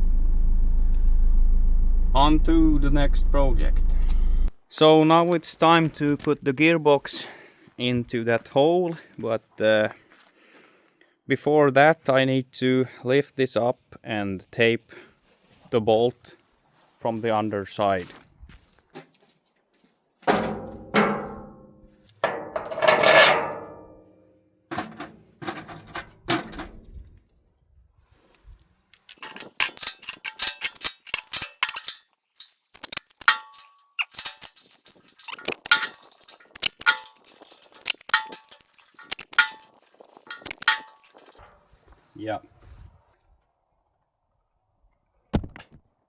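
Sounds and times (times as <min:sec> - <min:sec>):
metal clangs: 0:20.2 - 0:27.0, 0:29.0 - 0:41.6
metallic clicks and clinks: 0:28.2 - 0:41.4.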